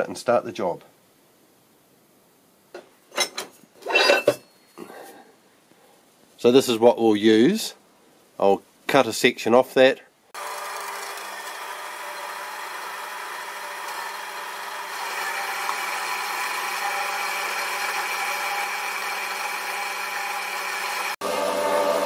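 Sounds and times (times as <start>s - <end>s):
power saw cutting metal bar: 10.4s - 22.0s.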